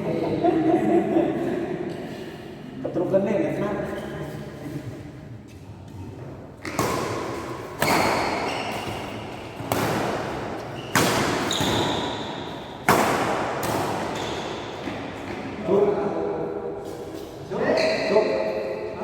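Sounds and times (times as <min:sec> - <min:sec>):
racket hitting shuttlecock: 0:06.6 - 0:15.5.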